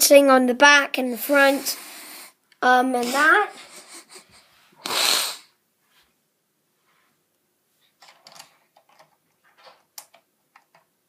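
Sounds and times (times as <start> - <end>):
plastic toy bricks clicking: 8.0 - 10.9.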